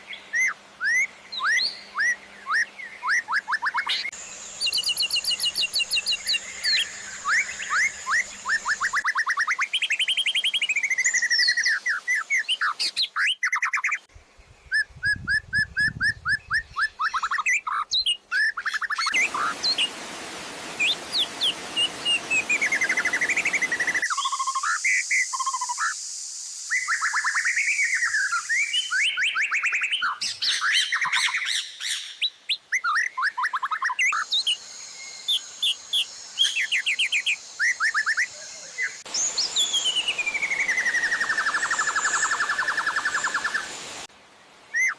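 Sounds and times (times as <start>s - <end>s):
songbird trills and whistles: 0.3s - 14.0s, 20.8s - 26.0s, 26.6s - 43.7s.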